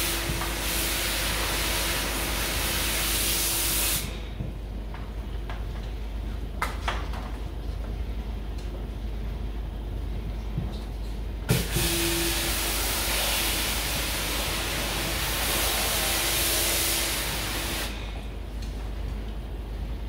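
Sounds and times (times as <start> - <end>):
pressure washer spraying hiss: 0.0 - 4.2, 11.5 - 18.2
steady hum: 0.0 - 20.0.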